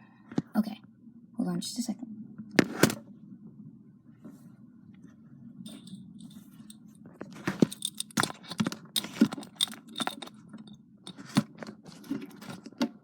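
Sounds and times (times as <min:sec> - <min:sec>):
low steady hum: 0:00.0 - 0:13.0
handling clicks taps and rustles: 0:05.7 - 0:13.0.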